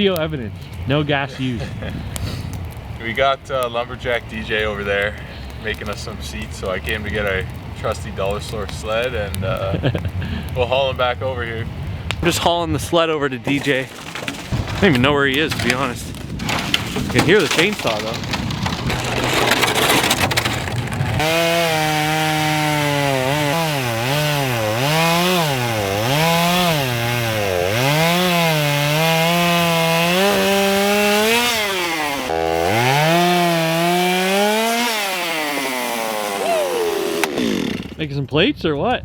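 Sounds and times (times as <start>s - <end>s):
chainsaw cutting log: 13.5s - 38.0s.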